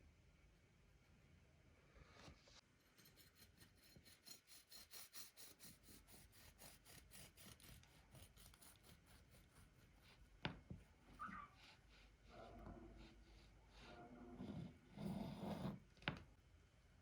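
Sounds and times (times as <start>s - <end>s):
utensil scraping food: 2.6s - 10.2s.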